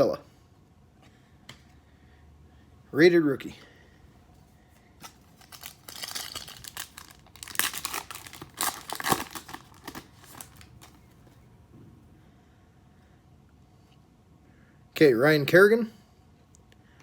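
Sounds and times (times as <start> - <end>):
foil wrapper tearing and crinkling: 5.0 - 11.0.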